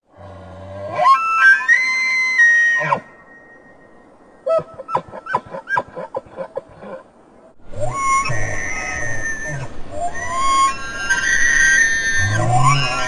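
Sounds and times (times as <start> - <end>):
elk bugling: 4.4 - 7.0, 7.7 - 13.0
elk grunting chuckles: 5.1 - 7.0.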